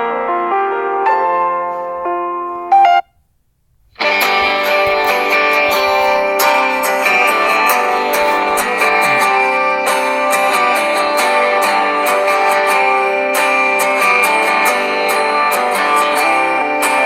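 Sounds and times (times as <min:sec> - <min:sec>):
guitar music with steady beat: 0:02.7 - 0:03.2, 0:03.8 - 0:17.0.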